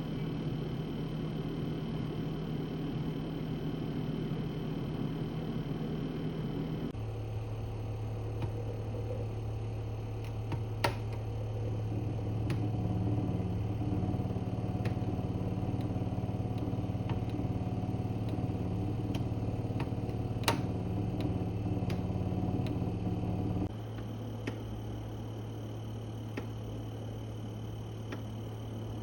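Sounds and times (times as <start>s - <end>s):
refrigerator compressor humming: 0.0s - 29.0s
sharp clicks: 18.2s - 22.9s.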